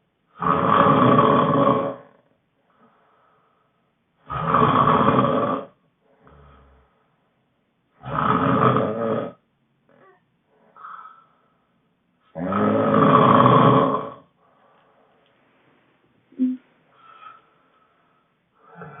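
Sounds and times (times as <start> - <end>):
person snoring loudly: 0.4 - 2.2, 4.3 - 6.8, 8.0 - 9.4, 12.4 - 14.3, 18.6 - 19.0
soft breaths: 2.2 - 4.0, 14.3 - 19.0.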